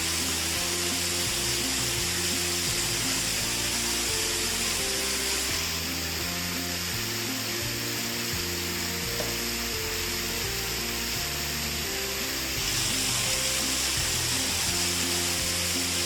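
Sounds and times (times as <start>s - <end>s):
slow sustained background music: 0.0s - 16.0s
steady loud hiss: 0.0s - 16.0s.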